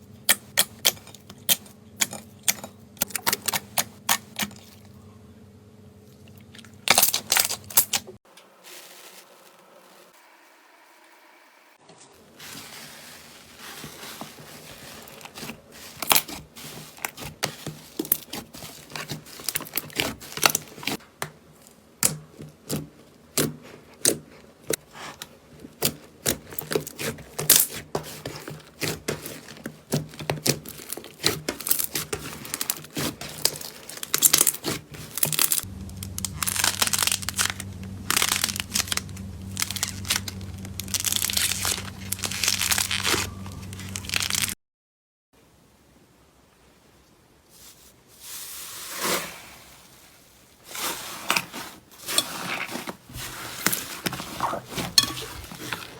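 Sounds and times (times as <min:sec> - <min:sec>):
slime crinkly crunching: 0:06.8 - 0:10.2, 0:12.2 - 0:21.0, 0:25.8 - 0:44.6, 0:47.5 - 0:55.9
slime crackling and popping: 0:30.7 - 0:44.6
low steady hum: 0:33.4 - 0:44.6.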